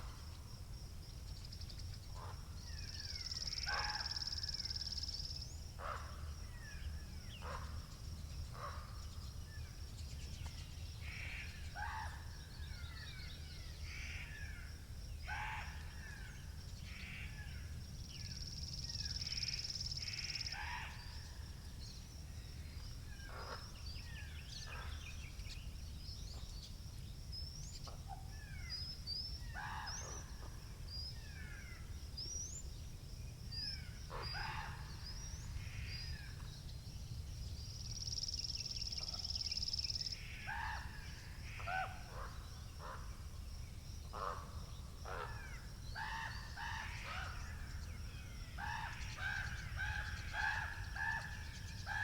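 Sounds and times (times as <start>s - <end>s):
birds chirping and singing: 45.8s - 52.0s.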